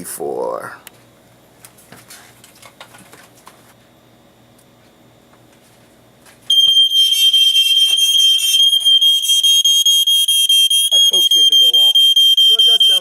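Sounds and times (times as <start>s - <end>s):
smoke alarm tone: 6.5s - 13.0s.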